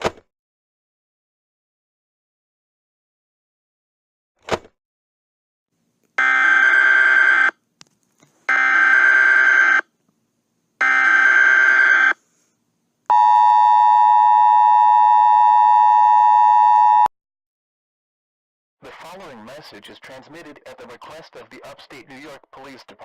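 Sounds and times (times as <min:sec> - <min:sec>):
two-tone attention signal: 0:13.1 - 0:17.1.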